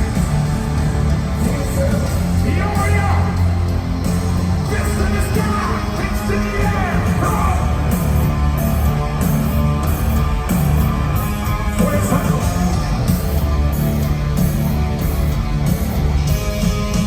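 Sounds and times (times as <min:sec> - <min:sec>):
voices singing or yelling: 0:00.0 - 0:13.4
live hard rock band: 0:00.0 - 0:17.0.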